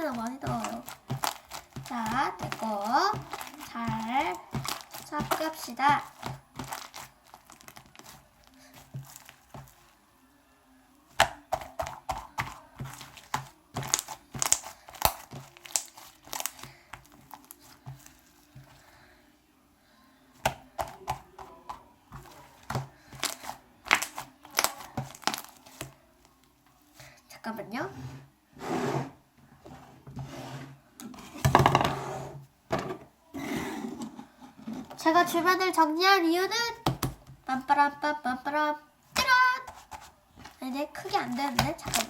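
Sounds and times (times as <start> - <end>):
slime squelching and popping: 0.0 - 9.9, 11.1 - 18.9, 20.4 - 26.0, 39.2 - 42.0
scraping against a hard surface: 27.9 - 32.4.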